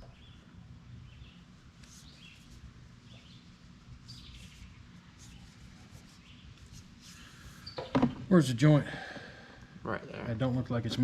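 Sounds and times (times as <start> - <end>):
low steady background noise: 0.0 - 11.0
faint bird chirps: 1.1 - 6.6.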